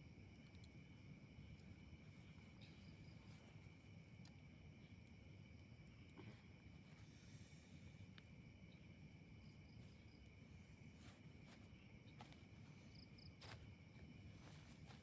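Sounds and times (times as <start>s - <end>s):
high insect trill: 0.0s - 15.0s
faint clicks and chirps: 0.2s - 6.2s.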